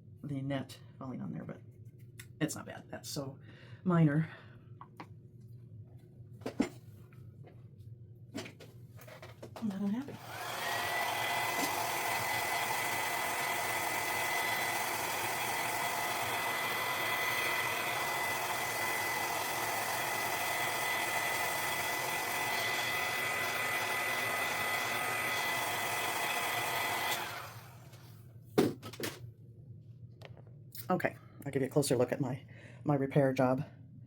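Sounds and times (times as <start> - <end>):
hair dryer blowing: 9.9 - 28.0.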